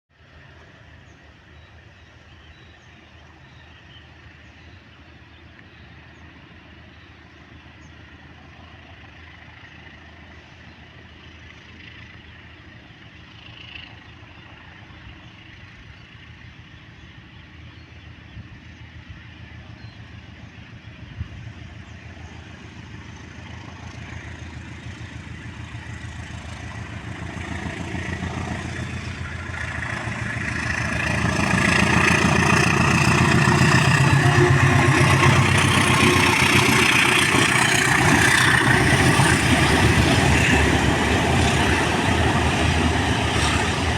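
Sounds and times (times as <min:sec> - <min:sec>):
diesel engine running: 0:21.1 - 0:43.9.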